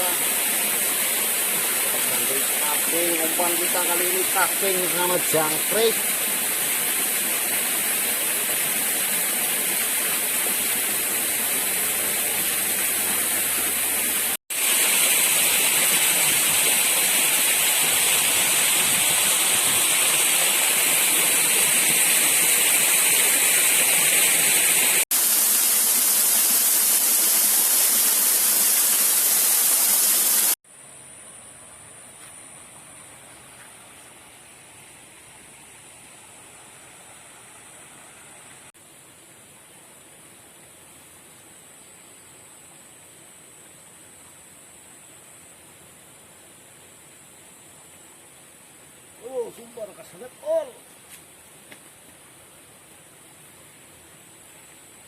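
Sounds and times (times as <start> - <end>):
rushing water: 0.0 - 30.6.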